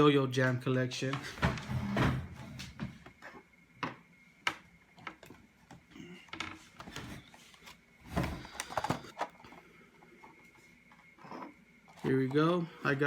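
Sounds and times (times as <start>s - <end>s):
objects clattering: 5.0s - 12.6s.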